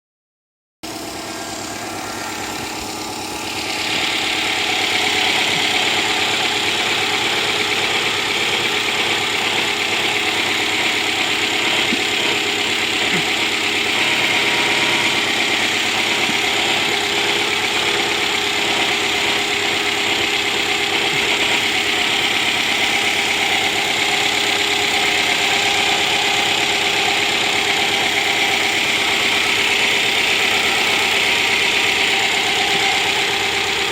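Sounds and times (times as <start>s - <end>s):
car engine idling: 0.8s - 33.9s
high-pitched engine noise: 0.8s - 33.9s.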